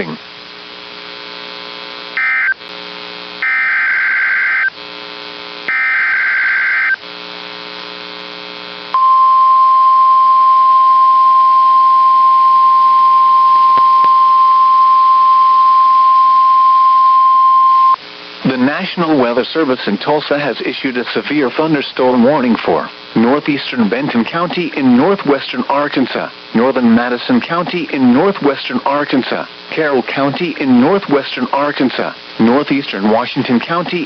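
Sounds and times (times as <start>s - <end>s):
low radio hum: 0.0s - 3.5s, 4.5s - 34.0s
steady alarm tone: 2.2s - 2.6s, 3.4s - 4.7s, 5.7s - 7.0s.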